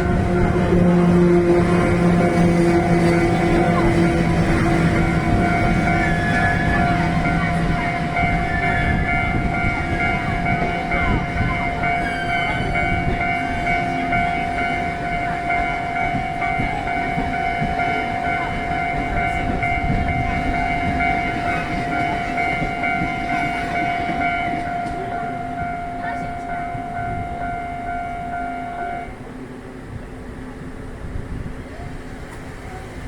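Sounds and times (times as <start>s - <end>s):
level crossing warning tone: 0.0s - 29.3s
train wheels rumbling on rails: 0.0s - 33.0s.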